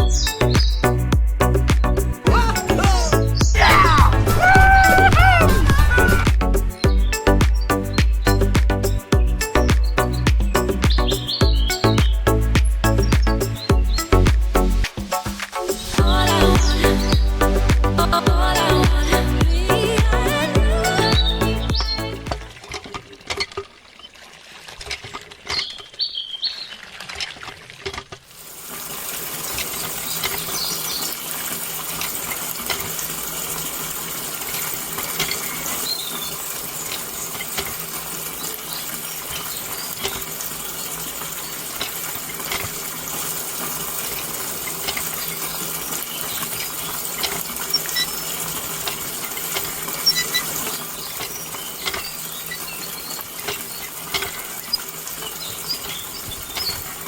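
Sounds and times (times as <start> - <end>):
running water splashing: 0.0 - 57.0
small clicks and drips: 21.8 - 57.0.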